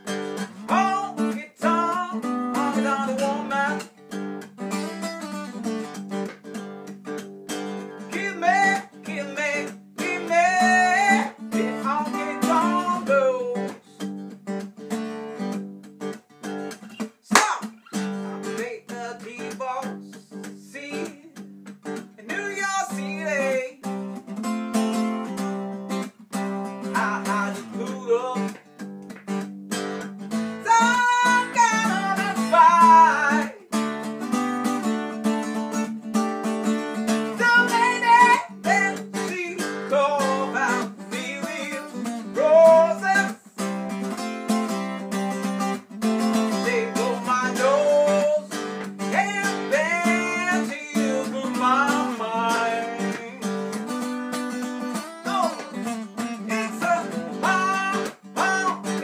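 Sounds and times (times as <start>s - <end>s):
acoustic guitar strumming: 0.0s - 59.0s
person singing: 0.6s - 3.9s, 8.0s - 14.0s, 17.3s - 21.4s, 22.2s - 23.9s, 26.8s - 28.6s, 30.6s - 34.0s, 37.1s - 44.2s, 46.2s - 54.1s, 55.0s - 59.0s.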